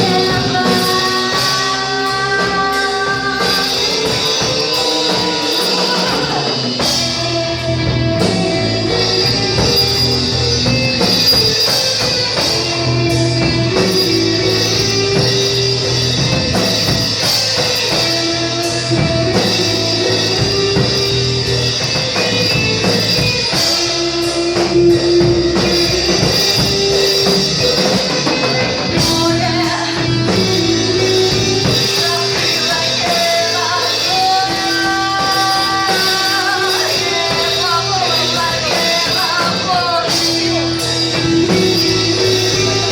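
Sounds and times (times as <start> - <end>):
person singing: 0.0 - 10.4, 23.6 - 42.9
drum kit: 0.0 - 42.9
guitar: 0.0 - 42.9
rock music: 0.0 - 42.9.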